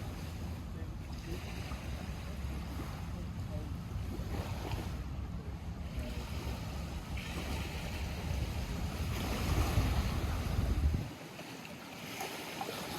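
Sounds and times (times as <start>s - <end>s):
lake water lapping: 0.0s - 12.9s
wind on microphone: 5.8s - 11.2s.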